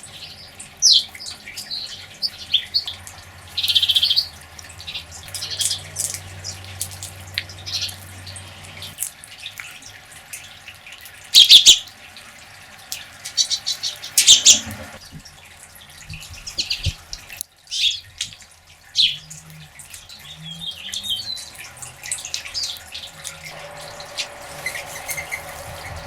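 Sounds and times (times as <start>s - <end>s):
harsh rasping bird calls: 0.0s - 9.6s, 11.4s - 11.9s, 13.1s - 15.0s, 18.9s - 26.0s
birds chirping: 0.0s - 9.8s, 11.4s - 11.9s, 13.0s - 15.0s, 18.8s - 26.0s.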